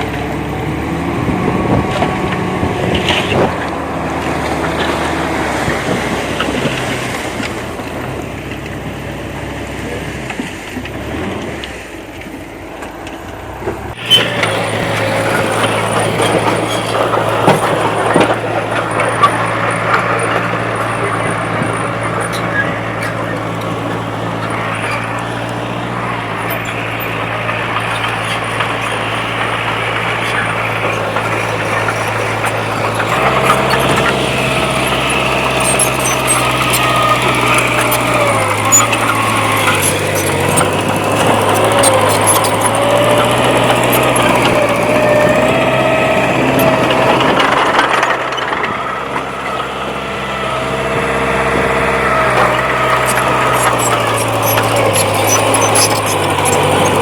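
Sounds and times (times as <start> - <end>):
bulldozer diesel engine: 0.0 - 57.0.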